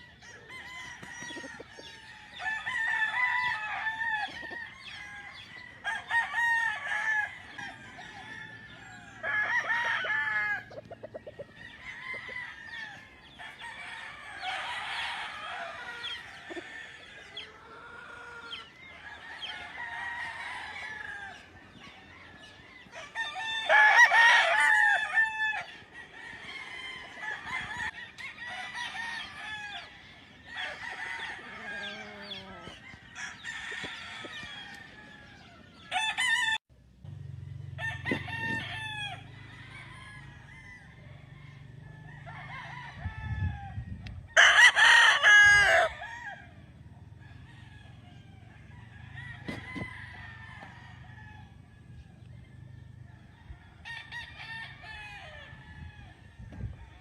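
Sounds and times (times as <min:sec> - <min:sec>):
chickens clucking: 0:00.0 - 0:06.1, 0:06.9 - 0:23.8, 0:25.6 - 0:36.3, 0:37.0 - 0:39.2
roosters crowing: 0:00.0 - 0:57.0.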